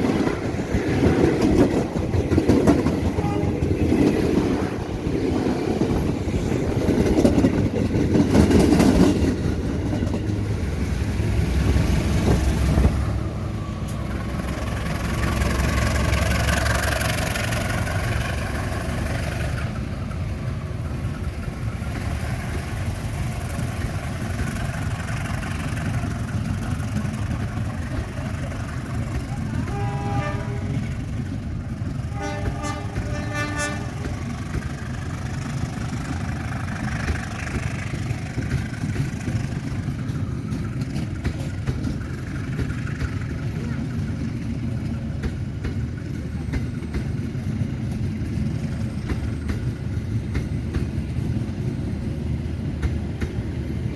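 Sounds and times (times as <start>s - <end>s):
road vehicle engines running: 0.0s - 53.9s
train rumbling on rails: 0.0s - 53.9s
vehicle horn beeps: 3.2s - 3.8s, 29.7s - 30.8s, 32.1s - 33.9s.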